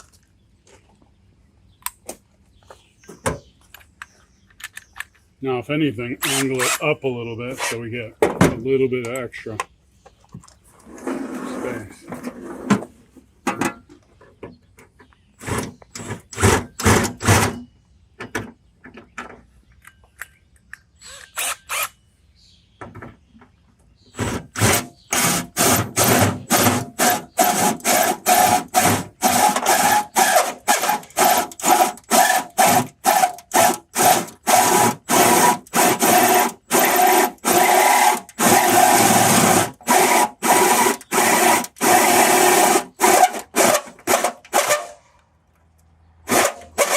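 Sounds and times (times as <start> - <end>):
power drill bursts: 6.2 - 6.8, 24.2 - 45.0, 46.3 - 46.9.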